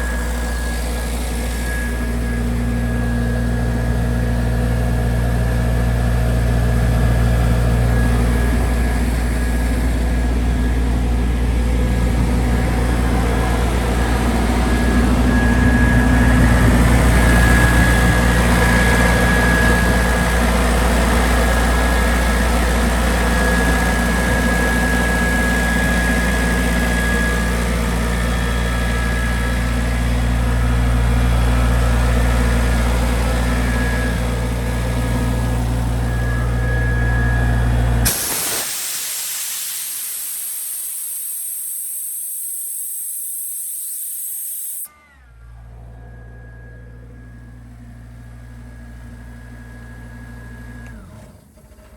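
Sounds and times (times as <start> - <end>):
thin steady whine: 0.0 - 44.9
compressor diesel engine hum: 0.0 - 51.9.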